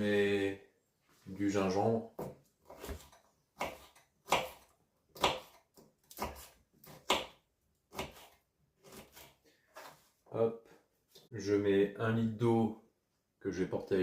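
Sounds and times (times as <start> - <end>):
knife cutting on cutting board: 2.6 - 10.0.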